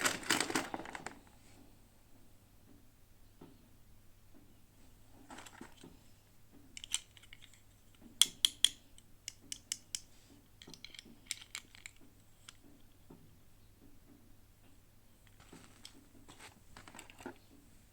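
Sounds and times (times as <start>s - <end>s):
packaging rustling: 0.0s - 1.3s, 15.3s - 17.5s
plastic toy pieces clicking: 6.8s - 7.6s, 8.2s - 12.6s.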